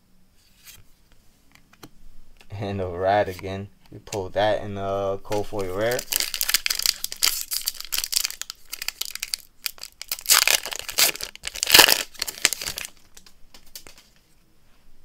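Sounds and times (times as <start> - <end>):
wrapper crinkling and tearing: 5.3 - 14.1
rustling of wrapper and cards: 5.3 - 14.3.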